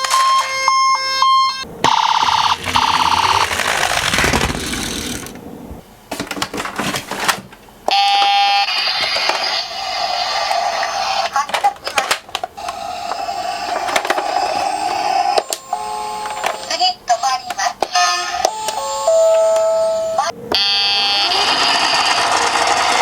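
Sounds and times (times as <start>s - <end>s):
buzzing electronic tone: 1.8s - 4.3s
noise and clicks: 1.8s - 7.4s
rapid electronic beeping: 1.9s - 4.2s.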